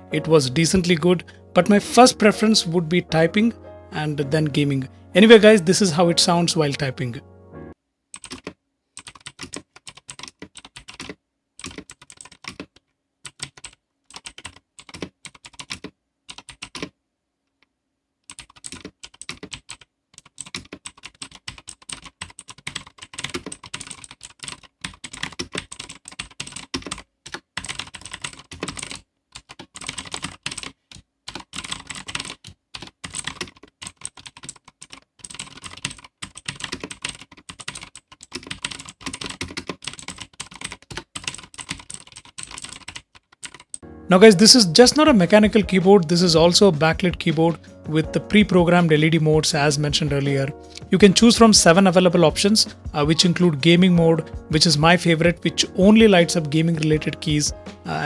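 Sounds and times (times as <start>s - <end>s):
clicky mechanical keyboard typing: 8.2s - 16.9s, 18.3s - 43.8s.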